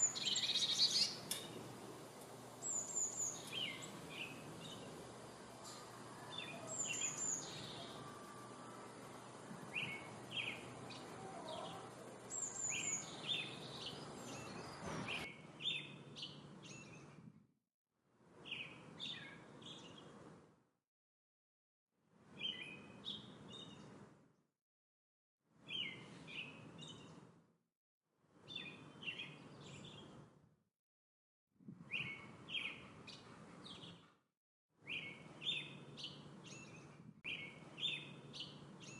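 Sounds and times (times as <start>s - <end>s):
songbirds chirping: 0.0s - 17.3s, 18.4s - 20.3s, 22.3s - 24.1s, 25.7s - 27.3s, 28.4s - 30.3s, 31.9s - 34.2s, 34.8s - 38.9s.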